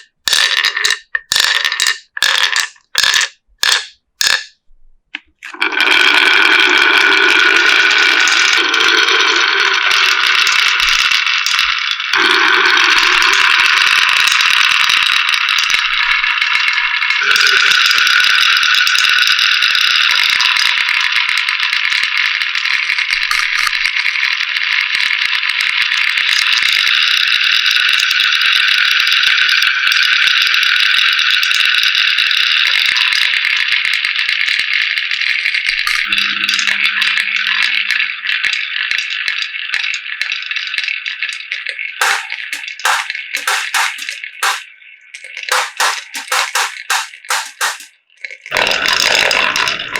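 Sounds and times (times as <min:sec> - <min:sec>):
marbles rolling on wooden slopes: 0:00.0 - 0:04.5.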